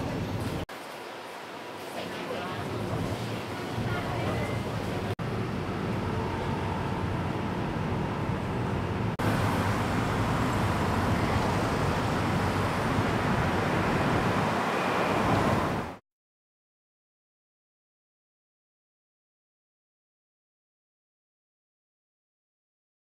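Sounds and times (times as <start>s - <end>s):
traffic roaring past: 0.0s - 16.0s.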